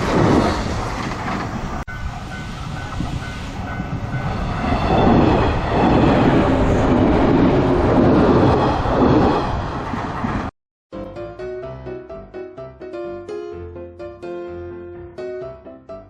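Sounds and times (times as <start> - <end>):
train passing on rails: 0.0 - 10.5.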